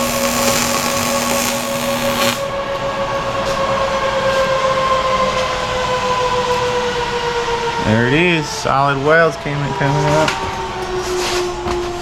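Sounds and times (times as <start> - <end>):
welding hiss and crackle: 0.0 - 2.5
steady machine hum: 0.0 - 12.0.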